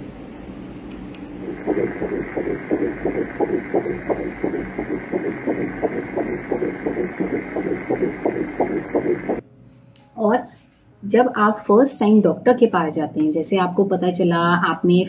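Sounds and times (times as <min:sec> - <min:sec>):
fetal heartbeat on monitor: 0:01.4 - 0:09.4.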